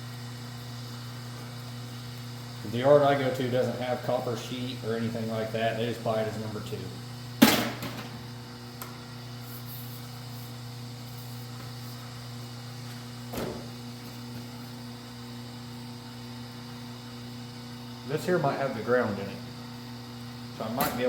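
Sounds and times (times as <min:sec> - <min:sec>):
electrical mains hum: 0:00.0 - 0:21.0
brief knock: 0:13.3 - 0:13.7.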